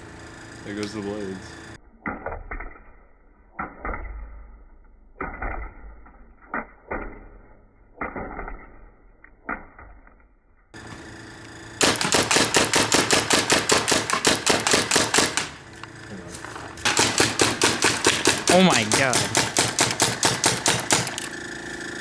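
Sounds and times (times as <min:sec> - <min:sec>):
paintball gun firing: 0:11.8 - 0:16.0, 0:16.8 - 0:21.4
paintballs hitting plastic fan: 0:11.8 - 0:21.4.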